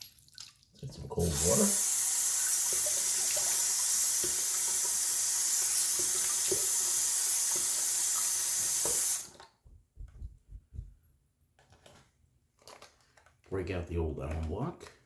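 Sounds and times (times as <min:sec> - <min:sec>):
tap water running into sink: 0:00.0 - 0:09.5.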